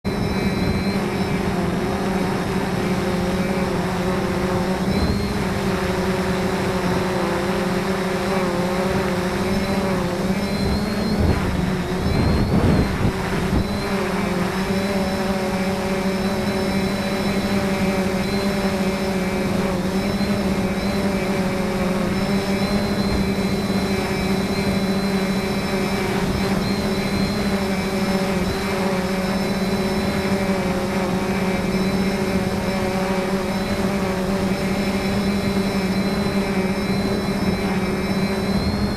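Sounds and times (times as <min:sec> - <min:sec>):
droning hum of held tones: 0:00.0 - 0:38.9
wind blowing: 0:00.1 - 0:38.9
wind gusts buffeting microphone: 0:08.7 - 0:38.9.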